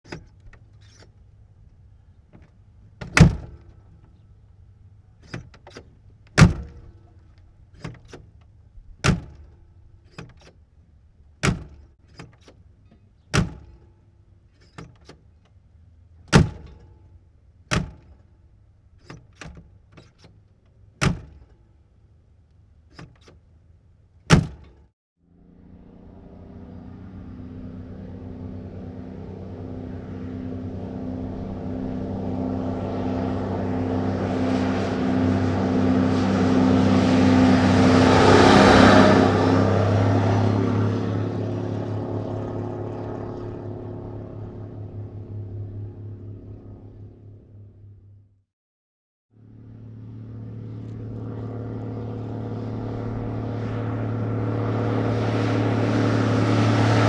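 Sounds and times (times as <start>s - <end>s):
latch and handle clicks: 2.3s - 3.8s, 5.2s - 7.2s, 7.8s - 10.6s, 14.6s - 15.6s, 23.0s - 23.4s
truck door slamming: 3.0s - 3.8s, 5.3s - 7.0s, 11.4s - 12.5s, 13.4s - 13.8s, 16.3s - 16.8s, 17.7s - 18.2s, 21.0s - 21.4s, 24.3s - 24.8s
truck engine approaching: 25.2s - 48.3s, 49.4s - 57.0s.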